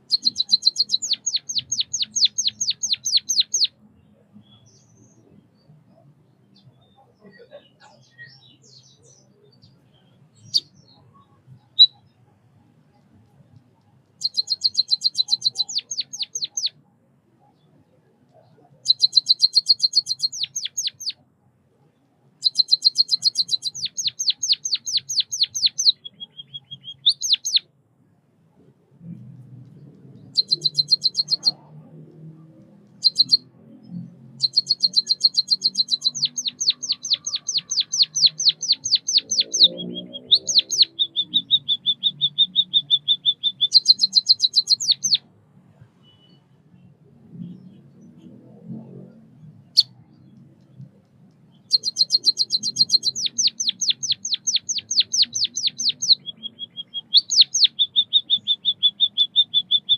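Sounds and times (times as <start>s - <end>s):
bird singing rapid trills: 0.0s - 3.8s, 14.2s - 16.8s, 18.8s - 21.2s, 22.4s - 27.7s, 30.2s - 31.9s, 32.8s - 45.2s, 51.5s - 59.9s.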